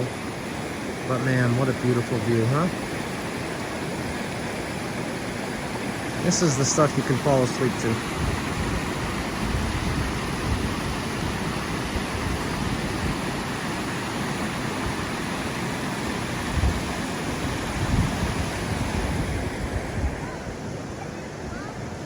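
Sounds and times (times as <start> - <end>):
river rushing: 0.0 - 22.0
wind buffeting microphone: 8.0 - 13.6, 16.2 - 21.8.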